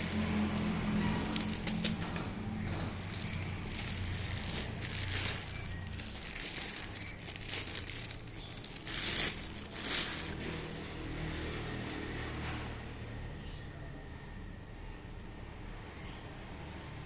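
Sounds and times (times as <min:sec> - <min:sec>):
packaging crinkling: 0:00.0 - 0:10.7.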